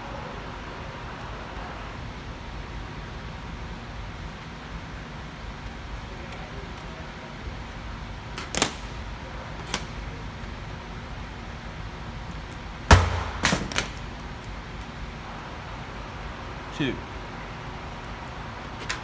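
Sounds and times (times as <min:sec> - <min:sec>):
low background hum: 0:00.0 - 0:19.0
dull thump: 0:12.9 - 0:14.1.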